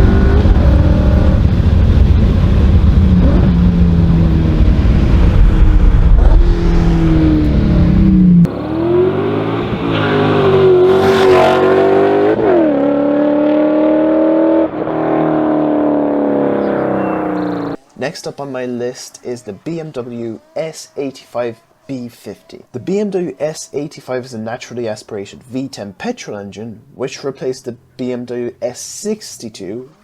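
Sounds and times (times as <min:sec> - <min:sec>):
car engine revving and accelerating: 0:00.0 - 0:17.8.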